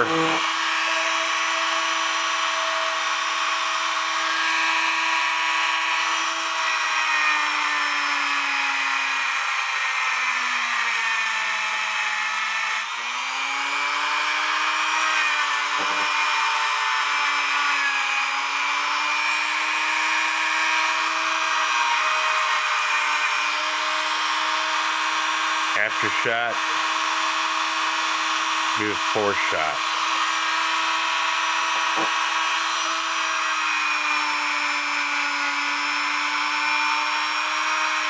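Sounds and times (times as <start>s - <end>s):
rotary tool whining: 0.0s - 38.0s.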